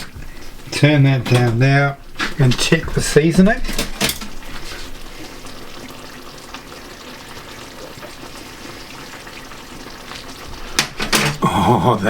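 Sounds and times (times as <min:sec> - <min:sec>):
curry simmering in a pan: 0:04.2 - 0:11.5.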